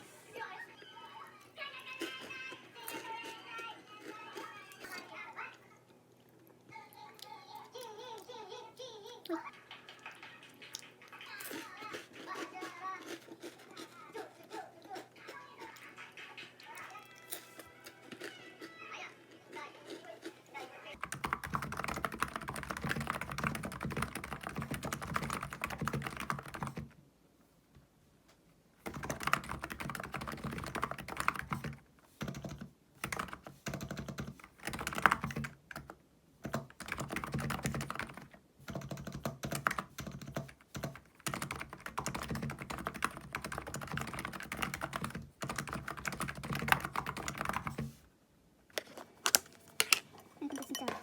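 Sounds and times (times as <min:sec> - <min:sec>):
rapid keyboard key clicks: 0:21.0 - 0:27.0, 0:28.8 - 0:47.9.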